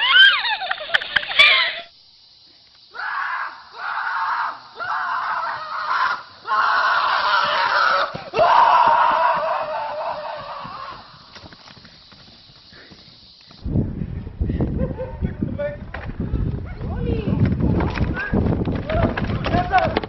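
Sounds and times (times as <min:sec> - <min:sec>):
person screaming: 0:03.0 - 0:11.1.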